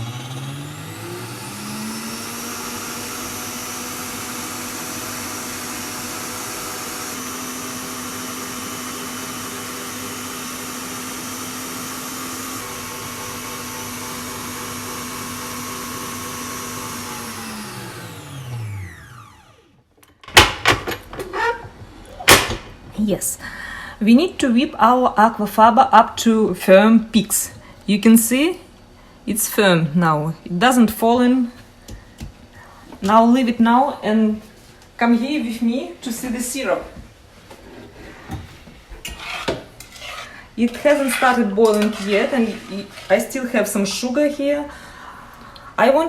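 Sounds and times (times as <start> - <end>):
electric mixer motor humming: 0.0 - 19.7.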